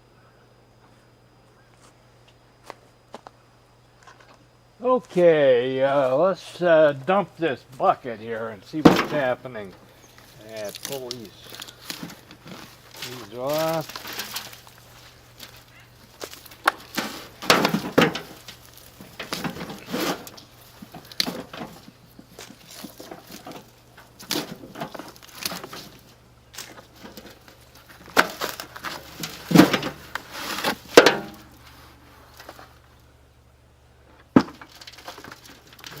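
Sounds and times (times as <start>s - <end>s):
soil crunching and scraping: 4.1s - 33.0s, 34.1s - 36.0s
loud thumps: 8.8s - 9.8s.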